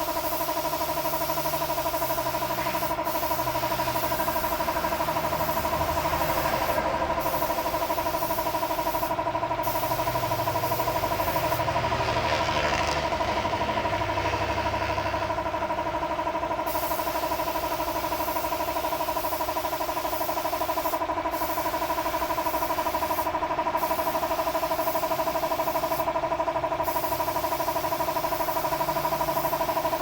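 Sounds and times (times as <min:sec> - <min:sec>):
motor pulsing hum: 0:00.6 - 0:16.0.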